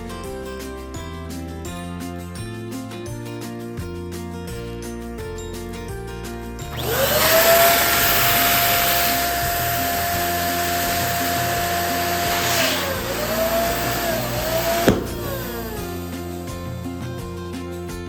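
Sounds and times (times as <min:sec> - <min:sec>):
background music: 0:00.0 - 0:18.0
electric balloon pump whine: 0:06.7 - 0:16.9.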